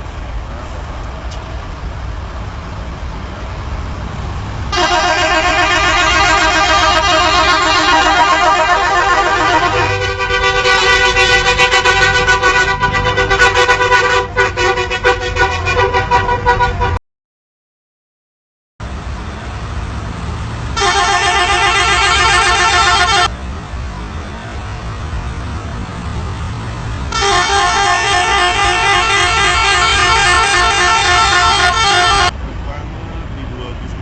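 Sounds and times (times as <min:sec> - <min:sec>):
engine and road noise: 0:00.0 - 0:17.0, 0:18.8 - 0:34.0
musical bus horns: 0:04.6 - 0:17.0, 0:20.6 - 0:23.4, 0:26.4 - 0:32.4.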